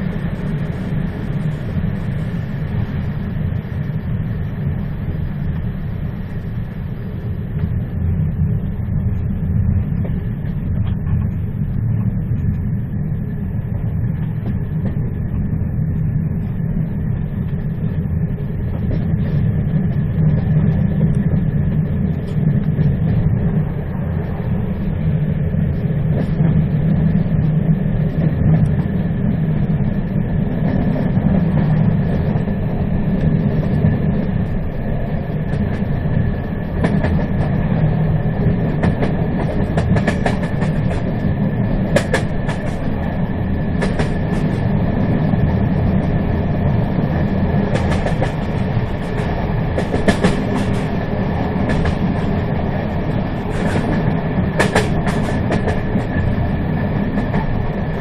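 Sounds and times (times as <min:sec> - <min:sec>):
train wheels rumbling on rails: 0:00.0 - 0:58.0
sharp clicks and rattles: 0:38.8 - 0:41.1, 0:41.9 - 0:43.1, 0:47.7 - 0:50.9, 0:53.5 - 0:56.3.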